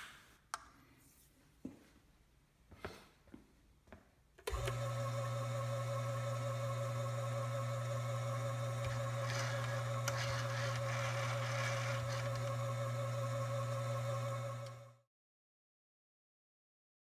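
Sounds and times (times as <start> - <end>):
lathe humming and whining: 4.5 - 15.0.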